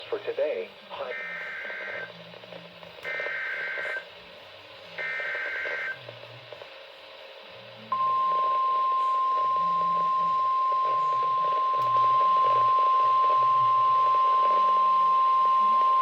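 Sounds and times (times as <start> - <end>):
radio hiss: 0.0 - 16.0.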